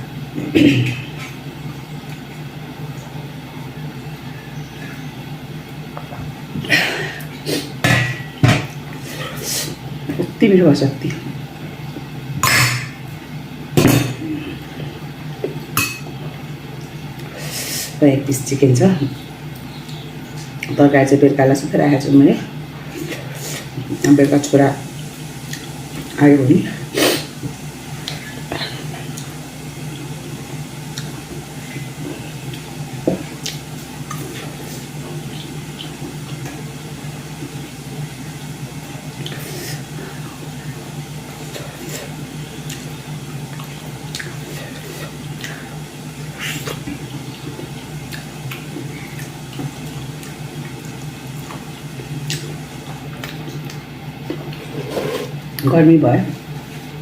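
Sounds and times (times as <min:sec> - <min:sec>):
steady low hum: 0:00.0 - 0:57.0
dishes clinking: 0:12.4 - 0:13.0
wet eating smacks and clicks: 0:30.9 - 0:31.2, 0:33.4 - 0:34.4, 0:42.6 - 0:42.9, 0:43.5 - 0:44.5, 0:46.4 - 0:54.6.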